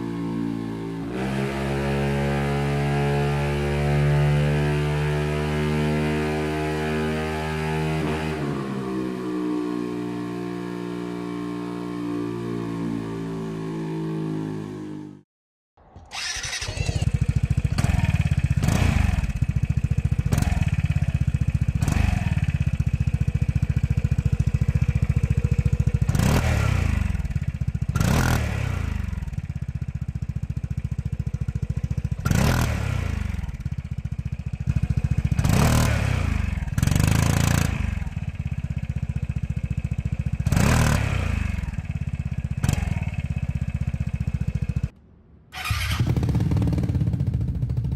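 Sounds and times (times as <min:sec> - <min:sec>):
scooter engine idling: 0:16.2 - 0:37.1, 0:37.7 - 0:44.9, 0:45.6 - 0:47.9.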